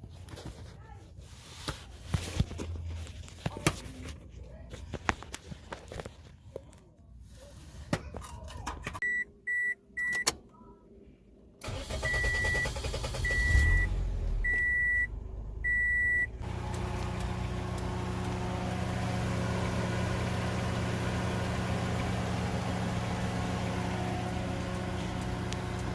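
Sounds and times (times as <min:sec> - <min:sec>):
car warning chime beeping: 0:09.0 - 0:10.4, 0:11.6 - 0:16.4
car engine cranking and idling: 0:11.6 - 0:25.9.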